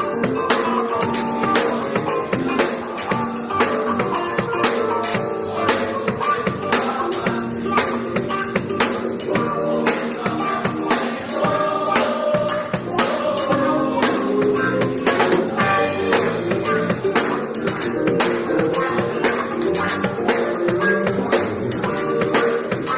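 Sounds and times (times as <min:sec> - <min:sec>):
drums: 0:00.0 - 0:22.9
guitar: 0:00.0 - 0:22.9
live gospel band: 0:00.0 - 0:22.9
people singing: 0:00.0 - 0:22.9
tambourine: 0:00.0 - 0:22.9.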